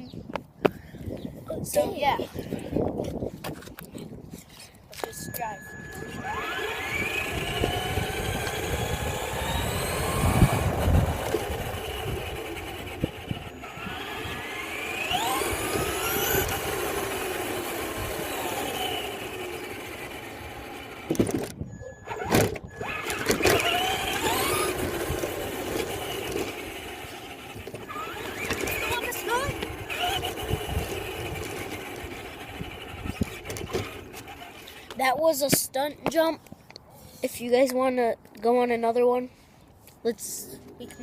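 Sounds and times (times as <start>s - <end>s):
wheels rumbling on ground: 1.5s - 39.3s
toy car motor whining: 2.0s - 35.2s.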